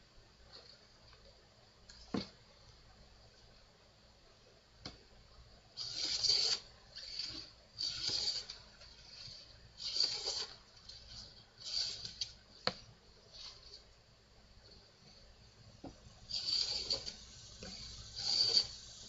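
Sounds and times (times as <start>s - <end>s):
hand plane scraping wood: 5.8s - 8.5s, 9.1s - 10.6s.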